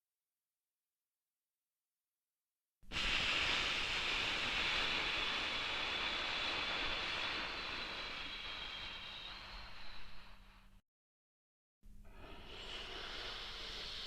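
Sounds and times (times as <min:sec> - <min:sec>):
long breathy exhale: 0:02.9 - 0:10.8, 0:11.9 - 0:14.0.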